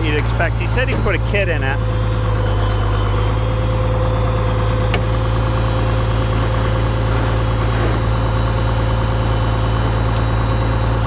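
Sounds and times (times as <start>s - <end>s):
tractor diesel engine running: 0.0s - 11.0s.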